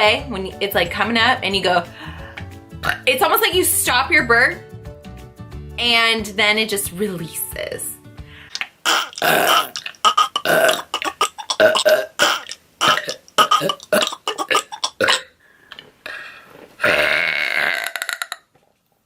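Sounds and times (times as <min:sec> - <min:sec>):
girl burping: 0:02.8 - 0:03.0, 0:08.9 - 0:15.3, 0:16.8 - 0:18.4.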